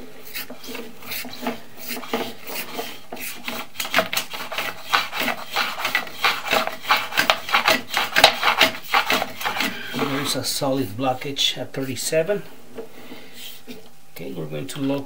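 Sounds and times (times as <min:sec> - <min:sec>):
push cable scraping in pipe: 0:00.0 - 0:12.0.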